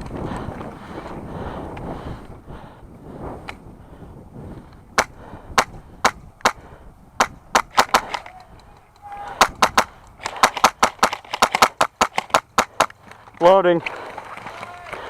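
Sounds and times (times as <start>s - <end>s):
airsoft rifle shots: 7.2s - 8.5s, 9.3s - 13.0s.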